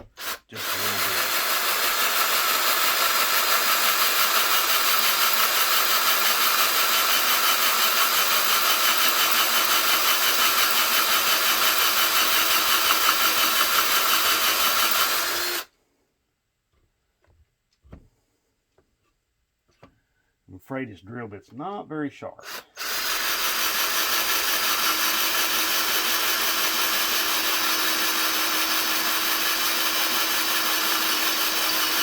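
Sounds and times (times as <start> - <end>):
electric drill drilling into metal: 0.0 - 15.7, 22.5 - 32.0.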